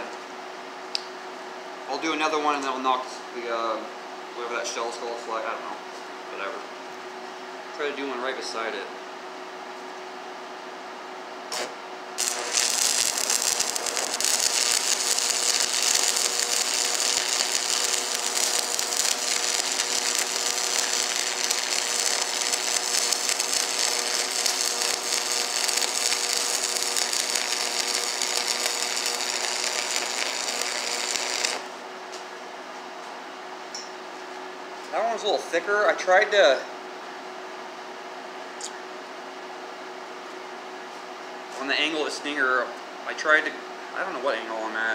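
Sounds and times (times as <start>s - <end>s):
welding arc crackling and sizzling: 11.5s - 31.8s.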